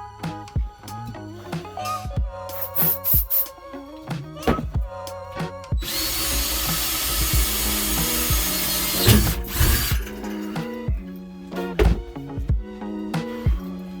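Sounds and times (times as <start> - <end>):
background music: 0.0 - 14.0
power drill running: 5.8 - 10.5.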